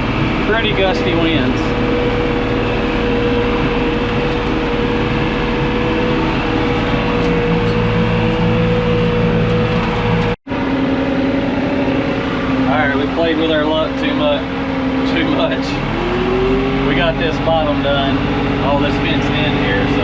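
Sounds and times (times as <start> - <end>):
steady whine: 0.0 - 20.0
tractor engine drone: 0.0 - 20.0.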